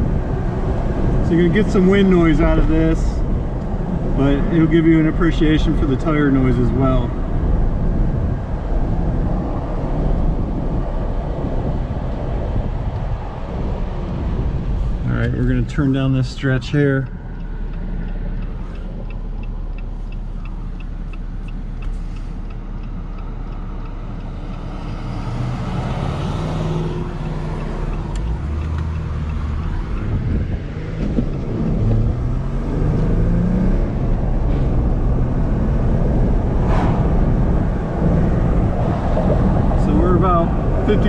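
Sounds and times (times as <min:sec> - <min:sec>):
wind noise: 0:00.0 - 0:19.6, 0:25.2 - 0:41.0
car engine accelerating: 0:00.0 - 0:41.0
tire noise: 0:00.0 - 0:41.0
turn signal ticking: 0:14.2 - 0:41.0.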